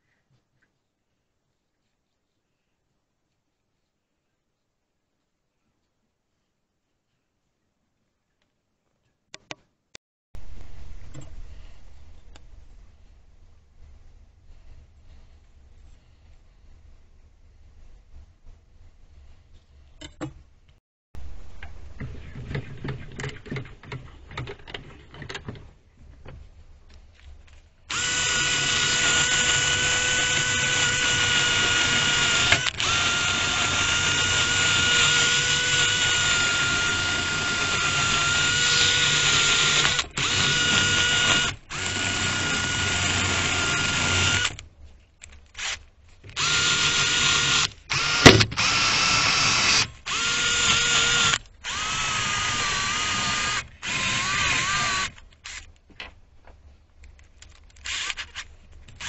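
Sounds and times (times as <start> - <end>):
power tool motor whining: 27.9 - 44.6, 46.3 - 55.6, 57.8 - 58.4.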